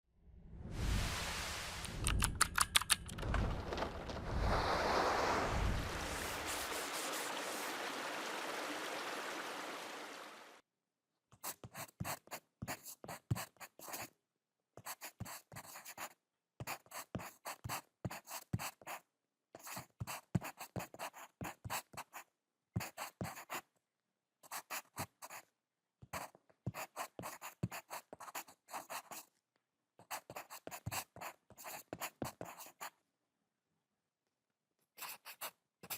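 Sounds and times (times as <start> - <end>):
noisy opening sound: 1.3 - 6.3
pencil writing on paper: 11.4 - 14.1, 14.8 - 19.0, 19.6 - 22.2, 22.8 - 23.6, 24.5 - 29.3, 30.0 - 32.9, 35.0 - 35.9.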